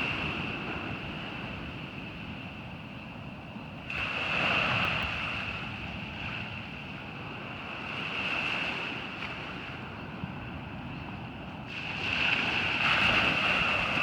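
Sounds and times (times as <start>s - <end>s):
steady hiss of surf: 0.0s - 14.0s
wave crashing on beach: 11.7s - 14.0s.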